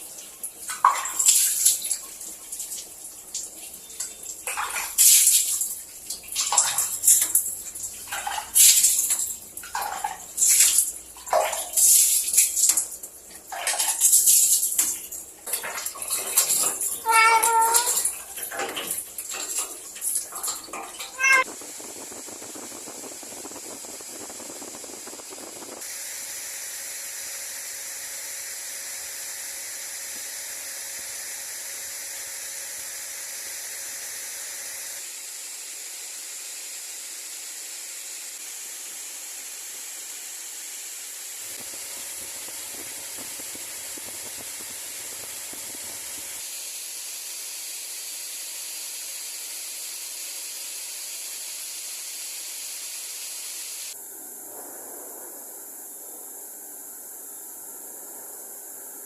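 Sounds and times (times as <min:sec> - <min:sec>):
steady hissing noise: 0:41.4 - 0:46.4, 0:53.3 - 0:59.0.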